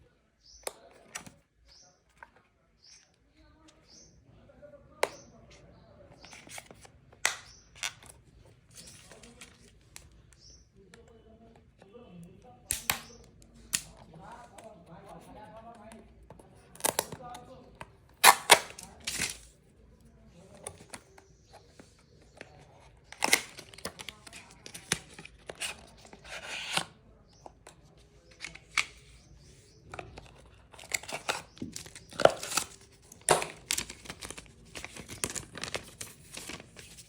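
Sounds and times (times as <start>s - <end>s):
cardboard and paper tearing: 18.2s - 19.5s.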